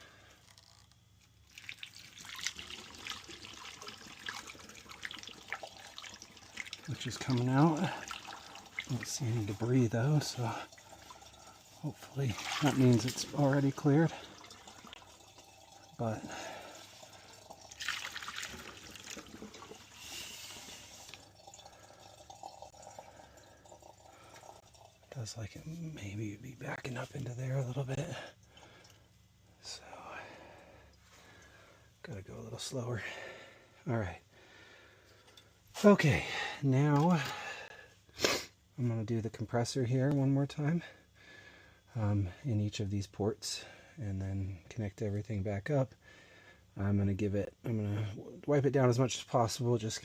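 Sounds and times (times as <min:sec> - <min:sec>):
water trickling and splashing down pipe: 0:00.0 - 0:29.2, 0:35.2 - 0:37.8.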